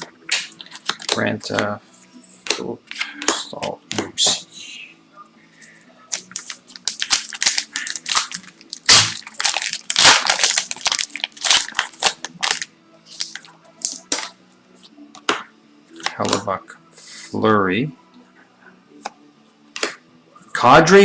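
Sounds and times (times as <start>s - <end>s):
wrapper crinkling and tearing: 6.1s - 14.3s.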